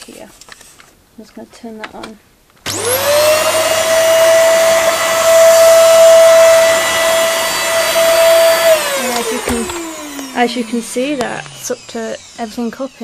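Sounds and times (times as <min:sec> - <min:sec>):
vacuum cleaner whine: 0:02.7 - 0:13.0.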